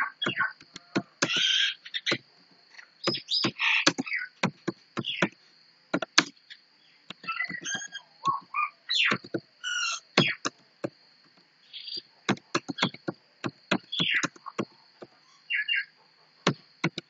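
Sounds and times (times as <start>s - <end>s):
laptop keyboard typing: 0.6s - 1.5s, 3.1s - 5.4s, 6.0s - 6.3s, 7.1s - 7.9s, 9.1s - 9.4s, 12.3s - 14.7s, 16.5s - 17.0s.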